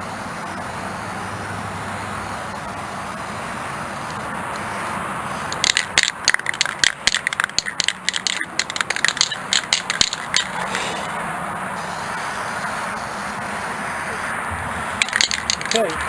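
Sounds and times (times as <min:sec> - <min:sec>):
spray can rattling: 0:05.5 - 0:11.2, 0:15.0 - 0:16.0.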